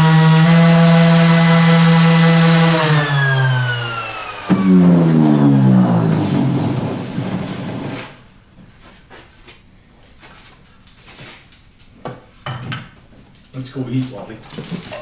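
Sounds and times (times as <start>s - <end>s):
power tool motor whining: 0.0s - 8.2s.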